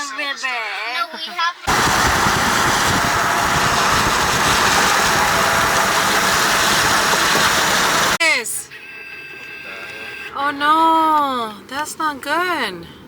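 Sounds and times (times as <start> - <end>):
heavy rain on a car: 1.7 - 8.2.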